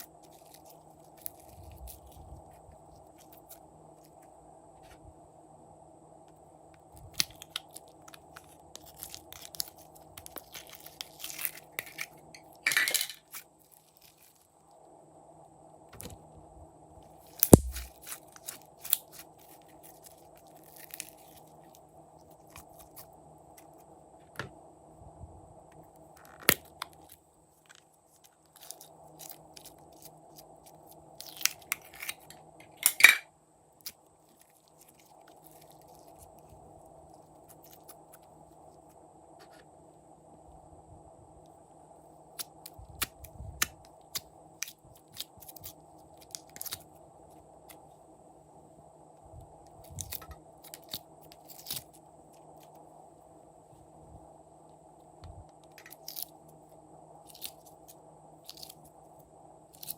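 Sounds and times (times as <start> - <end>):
sticky clicks and crackles: 7.1 - 14.4, 17.4 - 23.7, 42.4 - 46.9, 49.8 - 52.0, 55.6 - 56.4
slime squishing by hand: 17.4 - 21.4.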